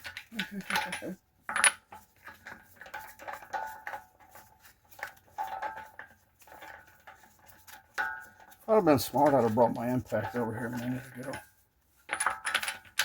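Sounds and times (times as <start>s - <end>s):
wrench on lug nuts clinking: 12.1s - 13.0s.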